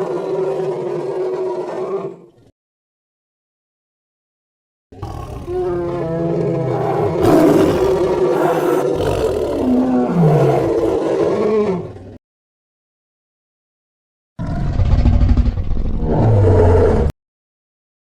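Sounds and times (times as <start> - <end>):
creature roar: 5.0 - 12.0, 14.4 - 17.1.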